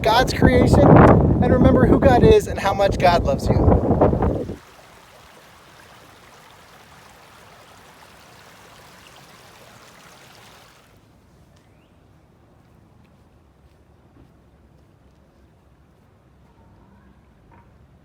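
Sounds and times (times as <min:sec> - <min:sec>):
flowing stream rushing: 0:03.7 - 0:11.0.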